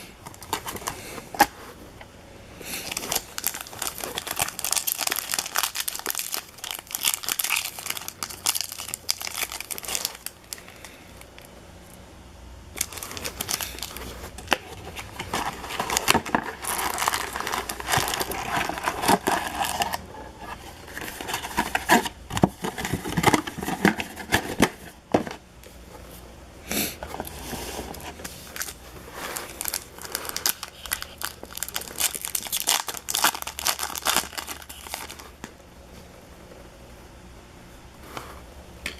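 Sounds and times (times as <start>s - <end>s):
foil wrappers tearing and crinkling: 2.8s - 10.9s, 12.8s - 20.0s, 28.5s - 35.3s.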